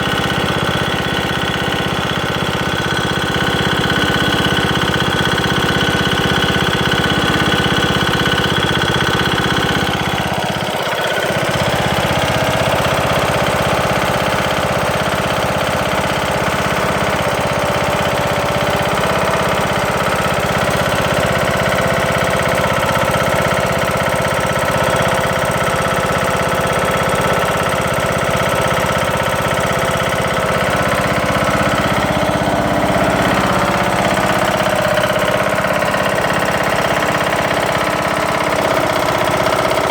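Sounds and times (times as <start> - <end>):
lawn tractor engine running: 0.0 - 39.9
loud engine knocking: 0.0 - 39.9.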